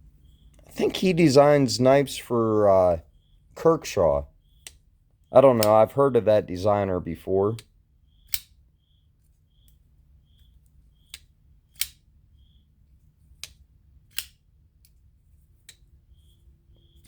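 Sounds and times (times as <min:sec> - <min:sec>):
folding knife clicking: 0:11.1 - 0:12.0, 0:13.4 - 0:15.0.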